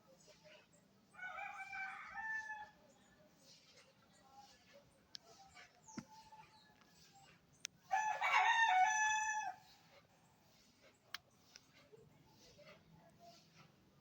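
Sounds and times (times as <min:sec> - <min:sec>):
small birds chirping: 0:00.0 - 0:14.0
rooster crowing: 0:01.2 - 0:02.8, 0:07.9 - 0:09.6.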